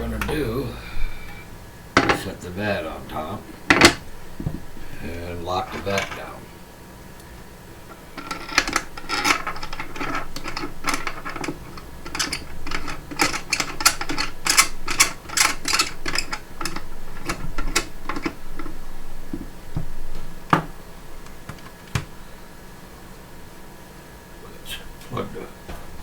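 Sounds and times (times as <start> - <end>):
clicks scrapes and rubbing: 7.9 - 19.5.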